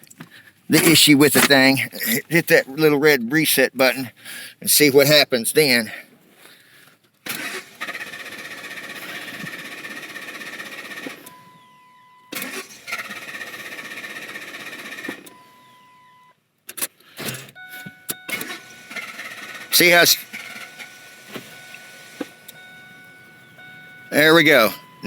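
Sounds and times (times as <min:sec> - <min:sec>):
starter cranking engine: 0:00.7 - 0:02.2, 0:07.2 - 0:11.4, 0:12.3 - 0:15.4, 0:16.7 - 0:25.0.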